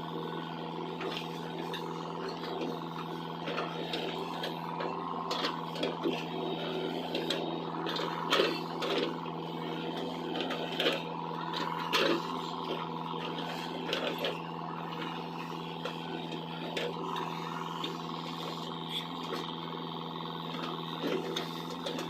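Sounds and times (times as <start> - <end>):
excavator engine running: 0.0 - 22.0.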